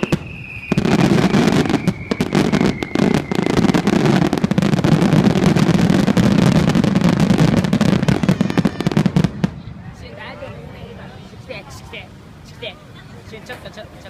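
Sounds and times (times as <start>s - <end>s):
firework whistle: 0.0s - 6.8s, 7.5s - 9.5s
fireworks bursting and crackling: 0.0s - 12.0s.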